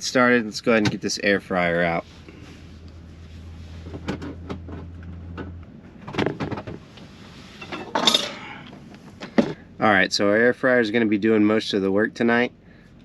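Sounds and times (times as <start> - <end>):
low steady hum: 0.0 - 13.0
kitchen gear clattering: 7.6 - 8.6.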